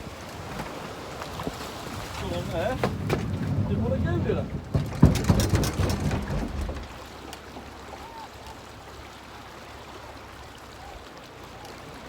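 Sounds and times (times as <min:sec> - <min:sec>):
water washing around hull: 0:00.0 - 0:12.0
boat knocking on trailer: 0:02.0 - 0:07.6.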